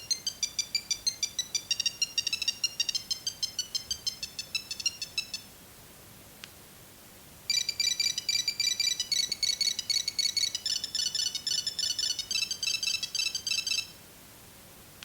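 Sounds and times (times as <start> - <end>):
monophonic phone ringtone beeps: 7.5 - 13.8.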